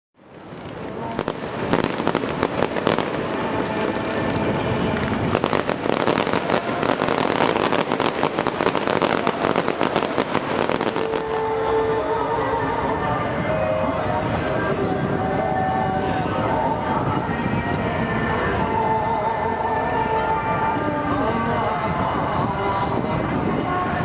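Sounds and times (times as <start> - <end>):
fireworks bangs and crackles: 0.2 - 11.9
continuous rumble: 0.3 - 24.0.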